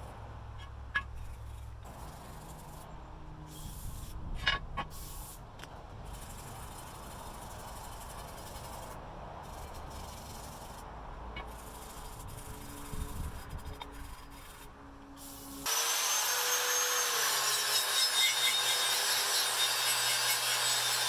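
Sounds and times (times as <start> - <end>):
hand rubbing on metal: 6.0 - 15.5.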